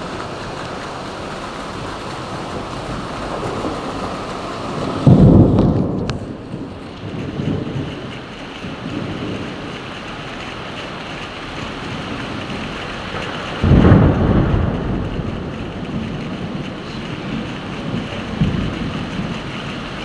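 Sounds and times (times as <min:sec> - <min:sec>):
heavy rain: 0:00.0 - 0:20.0
thunderclap rumbling: 0:00.0 - 0:20.0.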